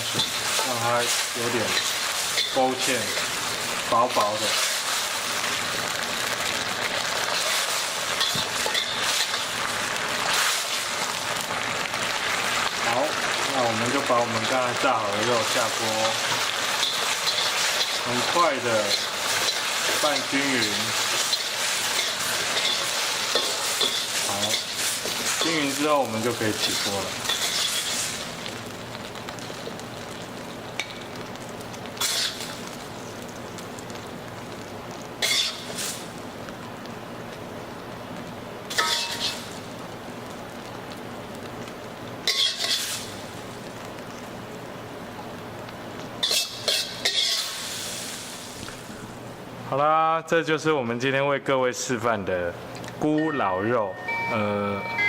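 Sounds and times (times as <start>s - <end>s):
sauce sizzling in a wok: 0.0s - 49.7s
metal spatula scraping wok: 7.4s - 9.5s, 16.7s - 25.6s, 26.6s - 28.2s, 32.0s - 32.5s, 35.2s - 36.0s, 38.7s - 39.5s, 42.2s - 43.1s, 46.2s - 48.2s.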